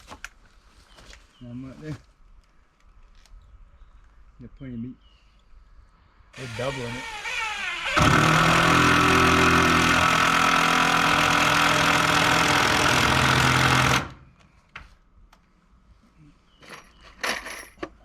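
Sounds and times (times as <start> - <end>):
power tool motor running: 6.4 - 14.2.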